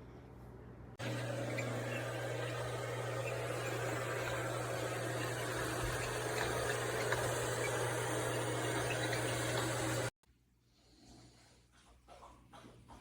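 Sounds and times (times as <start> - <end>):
robot vacuum running: 1.0 - 10.1.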